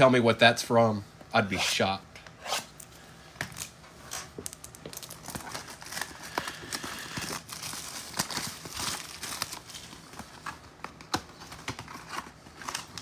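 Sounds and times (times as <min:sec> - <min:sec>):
foil wrappers crinkling and tearing: 0:03.5 - 0:10.6.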